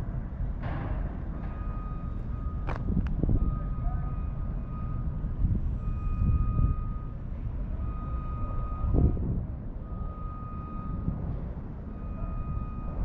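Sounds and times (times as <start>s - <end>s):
low vehicle rumble: 0.0s - 13.0s
reversing alarm beeps: 1.4s - 13.0s
wind on microphone: 2.7s - 4.1s, 5.0s - 7.0s, 8.6s - 9.7s.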